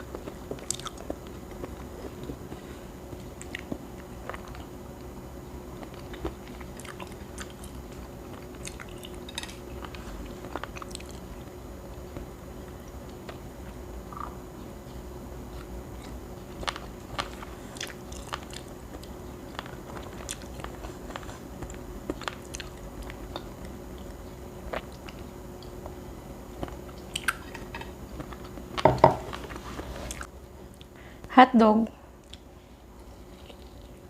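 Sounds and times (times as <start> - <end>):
chewing and biting food: 0.0 - 4.8, 5.7 - 26.0, 32.2 - 34.0.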